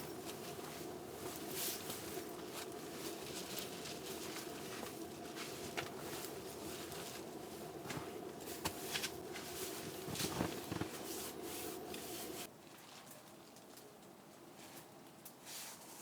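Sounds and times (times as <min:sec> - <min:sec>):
steady background hiss: 0:00.0 - 0:12.5.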